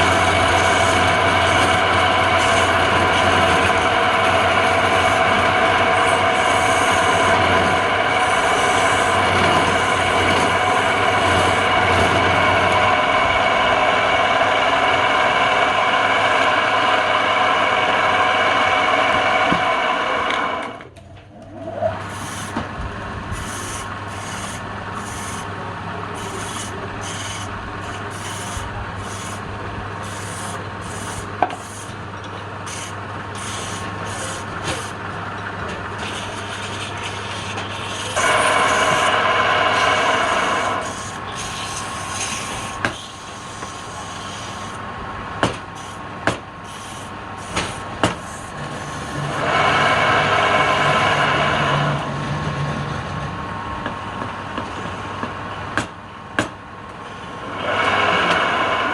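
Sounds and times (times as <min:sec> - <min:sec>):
tool scraping spinning wood: 0:00.0 - 0:14.3, 0:21.6 - 0:44.8, 0:45.5 - 0:52.0
wood lathe running: 0:00.0 - 0:20.7, 0:22.0 - 0:44.8, 0:45.7 - 0:52.1.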